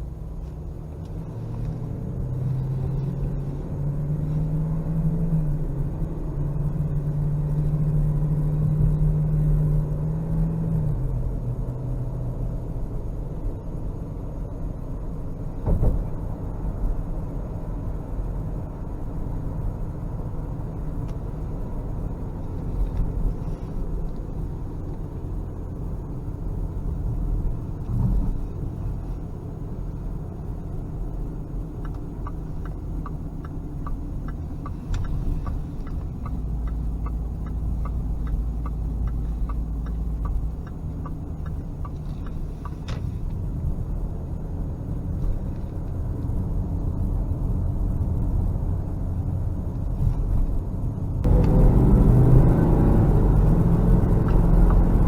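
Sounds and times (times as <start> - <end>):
car engine and road noise: 0.0 - 55.0
strong low hum: 0.0 - 55.0
light ticks: 30.6 - 43.7.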